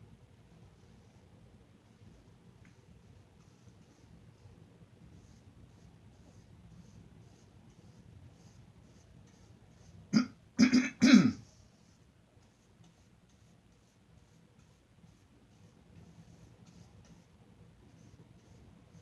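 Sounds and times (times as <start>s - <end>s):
paintbrush scratching on canvas: 1.9s - 10.1s, 11.4s - 19.0s
person coughing: 10.2s - 11.4s.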